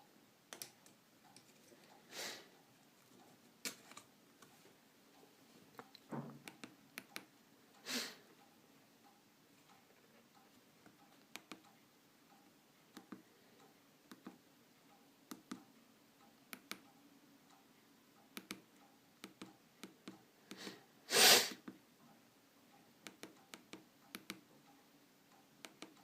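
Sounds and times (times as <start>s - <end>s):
soft clicks in pairs: 5.8s - 7.3s, 8.4s - 13.2s, 14.1s - 14.4s, 16.5s - 17.6s, 18.2s - 20.6s, 23.0s - 24.7s, 25.4s - 26.0s.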